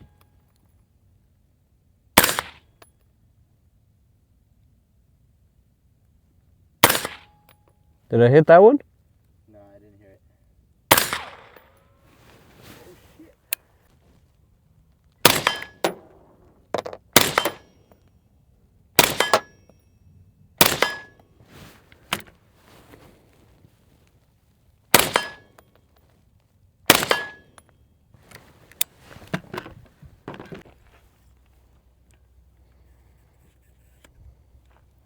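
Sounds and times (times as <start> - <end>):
rifle shots: 2.2 - 2.6, 6.8 - 7.3, 10.9 - 11.8, 15.2 - 16.1, 17.1 - 17.8, 19.0 - 19.6, 20.6 - 21.2, 24.9 - 25.5, 26.9 - 27.5.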